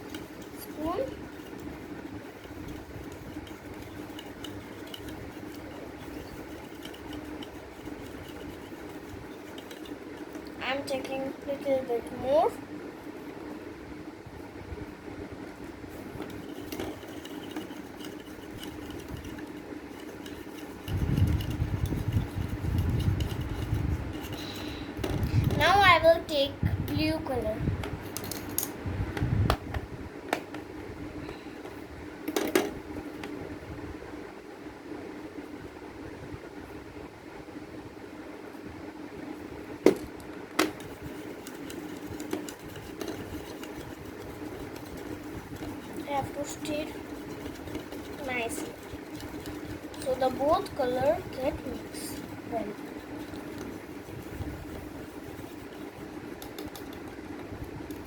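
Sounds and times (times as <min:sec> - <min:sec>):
steady mechanical hum: 0:00.0 - 0:58.0.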